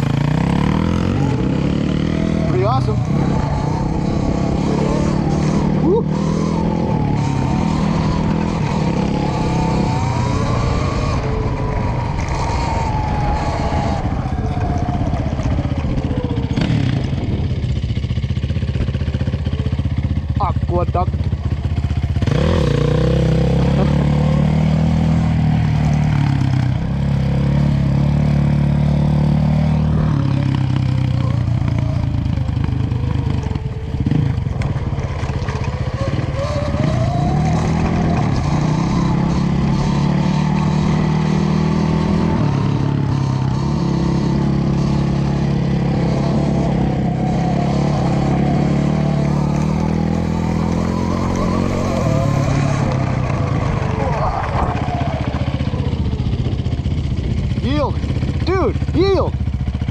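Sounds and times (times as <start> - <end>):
wind rush: 49.6 - 58.3.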